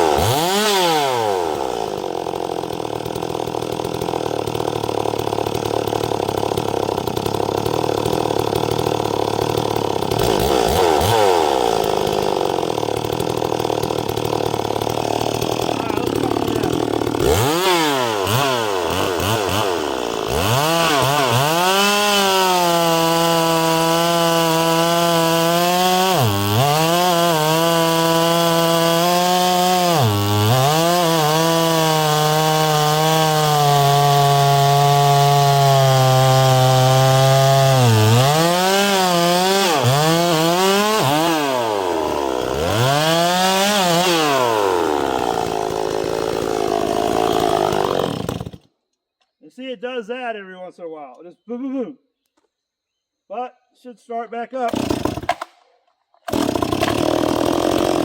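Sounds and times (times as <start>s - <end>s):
chainsaw cutting at high revs: 0.0s - 48.7s, 54.6s - 55.6s, 56.3s - 58.0s.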